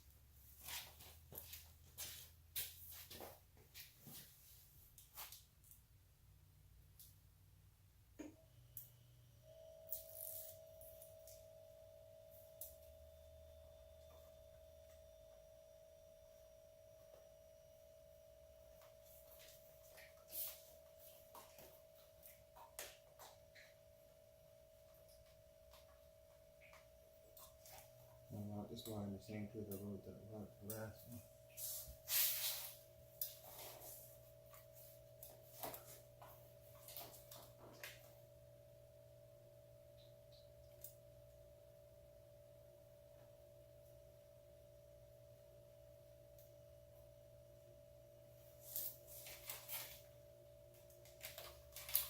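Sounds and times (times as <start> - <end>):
faint steady hum: 0.0 - 52.0
clicks and rustles of small parts: 51.0 - 52.0.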